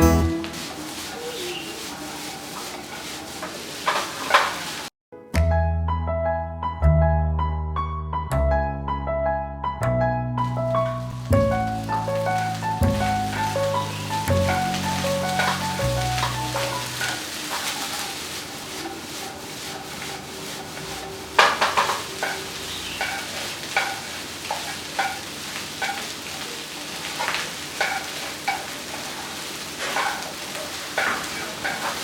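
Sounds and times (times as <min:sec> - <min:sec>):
food sizzling in frying pan: 0:00.0 - 0:04.9, 0:10.4 - 0:32.0
spatula scraping pan: 0:00.2 - 0:04.9, 0:11.4 - 0:26.1, 0:27.8 - 0:29.2, 0:29.8 - 0:32.0.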